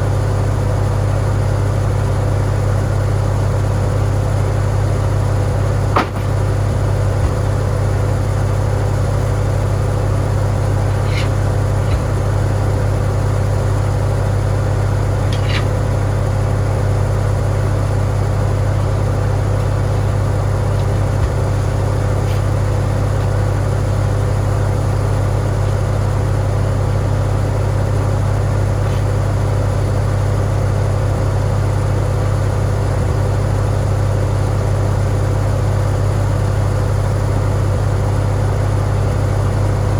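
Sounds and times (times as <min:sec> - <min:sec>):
tractor engine running: 0:00.0 - 0:39.9
sharp click: 0:15.2 - 0:15.8.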